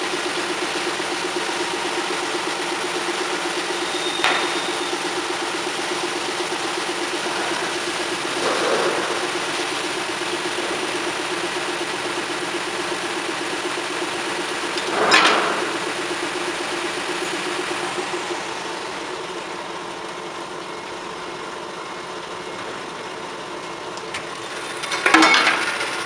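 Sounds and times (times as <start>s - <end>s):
band saw humming: 0.0s - 20.4s.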